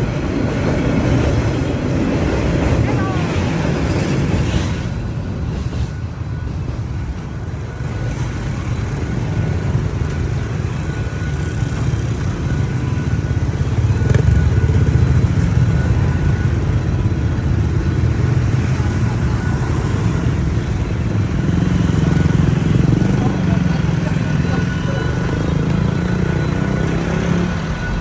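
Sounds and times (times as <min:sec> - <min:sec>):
low vehicle rumble: 0:21.9 - 0:28.0.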